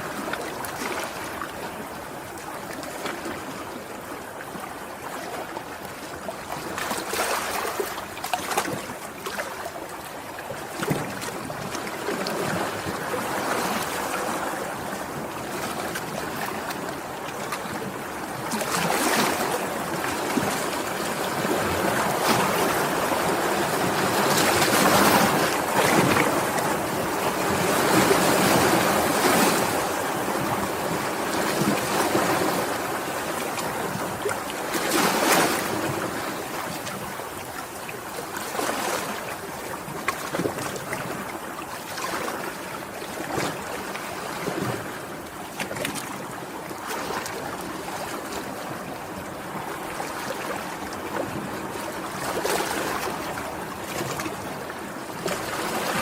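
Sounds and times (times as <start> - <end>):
sea waves breaking: 10.7 - 56.0.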